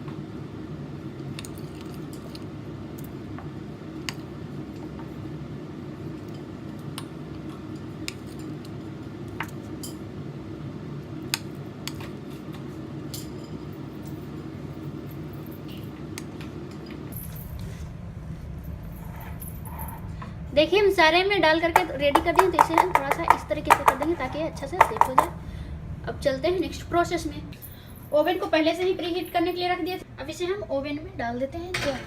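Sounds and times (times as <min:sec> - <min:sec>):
steady low hum: 0:00.0 - 0:32.0
metal spoon tapping bowl: 0:21.8 - 0:25.3.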